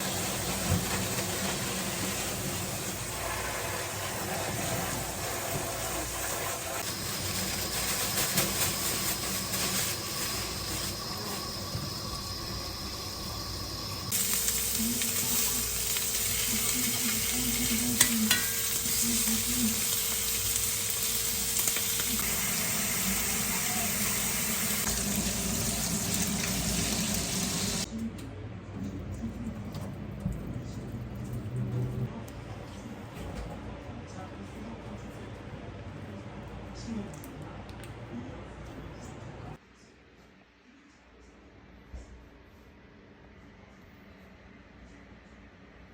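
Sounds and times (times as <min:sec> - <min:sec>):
meat sizzling in a pan: 0:06.0 - 0:27.9.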